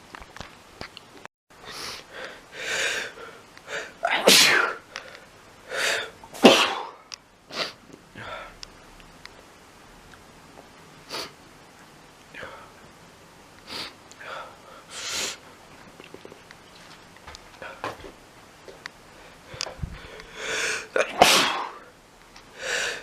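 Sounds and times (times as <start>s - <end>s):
man sneezing: 4.0s - 4.8s, 6.3s - 7.8s, 20.5s - 21.8s
sharp in-breaths: 19.3s - 21.8s, 22.5s - 23.0s.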